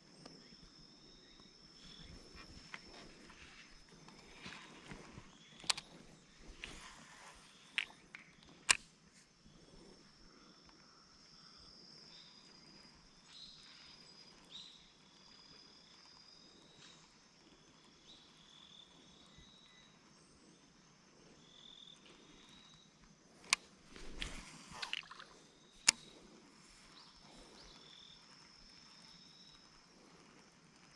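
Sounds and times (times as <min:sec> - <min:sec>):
insect chirring: 0:00.0 - 0:30.9
sharp clicks: 0:04.0 - 0:06.8, 0:23.4 - 0:26.2.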